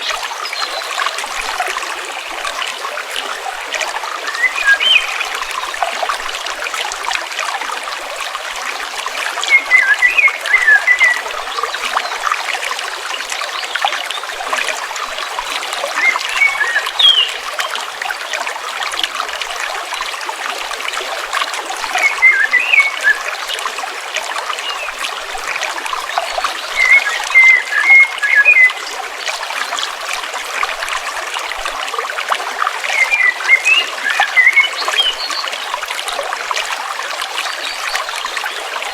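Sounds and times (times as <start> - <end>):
stream babbling over rocks: 0.0 - 38.9
songbird twittering: 4.2 - 5.2, 9.4 - 12.1, 15.9 - 17.4, 22.0 - 23.2, 26.6 - 28.8, 32.9 - 35.6.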